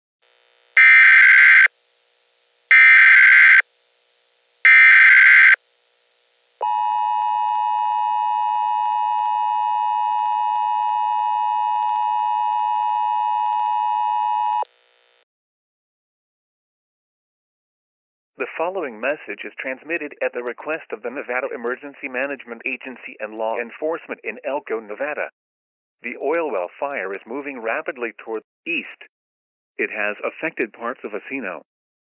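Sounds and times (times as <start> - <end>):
screeching digital data bursts: 0.8 - 1.7, 2.7 - 3.6, 4.7 - 5.6
two-tone attention signal: 6.6 - 14.6.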